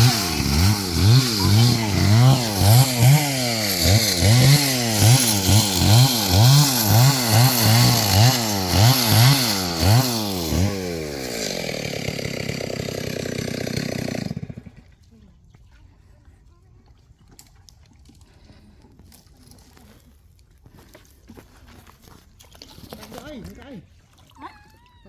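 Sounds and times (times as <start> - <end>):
small engine revving: 0.0 - 15.0.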